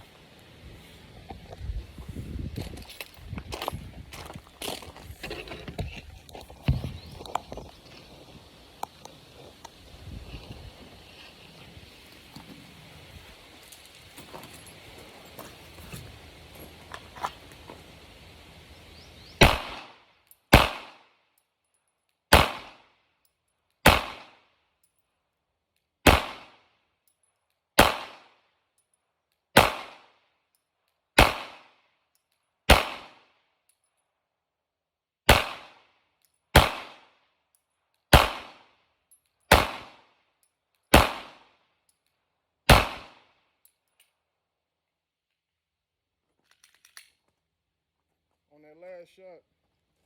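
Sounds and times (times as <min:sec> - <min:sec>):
pistol shots: 0:19.4 - 0:21.0, 0:22.3 - 0:22.9, 0:23.8 - 0:24.4, 0:26.0 - 0:26.6, 0:27.8 - 0:28.4, 0:29.6 - 0:30.2, 0:31.2 - 0:31.7, 0:32.7 - 0:33.2, 0:35.3 - 0:35.9, 0:36.5 - 0:37.1, 0:38.1 - 0:38.7, 0:39.5 - 0:40.0, 0:40.9 - 0:41.4, 0:42.7 - 0:43.3.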